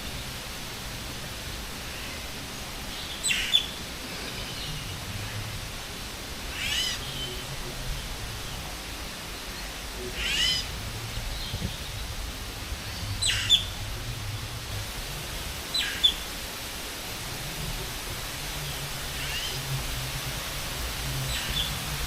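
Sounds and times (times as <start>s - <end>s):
steady background noise: 0.0s - 22.0s
high-pitched bird calls: 6.5s - 7.4s, 10.1s - 12.0s, 13.0s - 13.7s.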